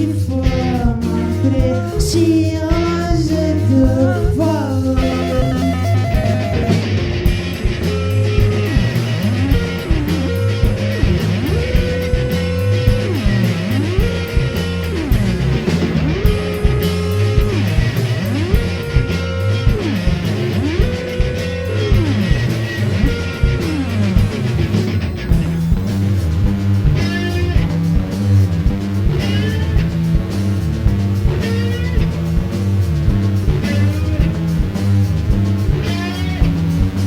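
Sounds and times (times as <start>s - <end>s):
psychedelic rock band playing: 0.0s - 37.0s
sliding guitar line: 0.3s - 37.0s.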